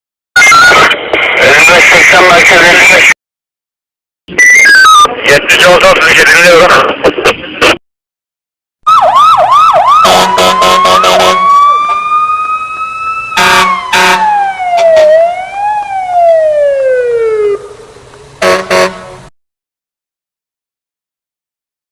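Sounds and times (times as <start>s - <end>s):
electronic police siren wailing: 0.4s - 0.9s, 4.4s - 5.2s, 8.8s - 17.8s.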